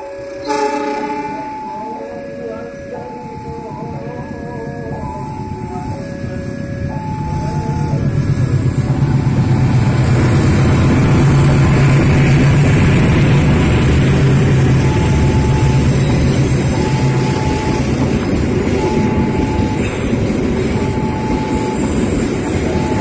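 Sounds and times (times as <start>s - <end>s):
faint high warning tone: 0.0s - 8.6s, 14.7s - 23.0s
diesel locomotive engine drone: 0.0s - 23.0s.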